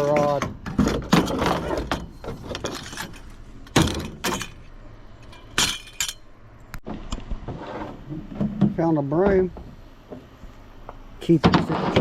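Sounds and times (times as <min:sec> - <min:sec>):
household items clattering: 0:00.0 - 0:06.2.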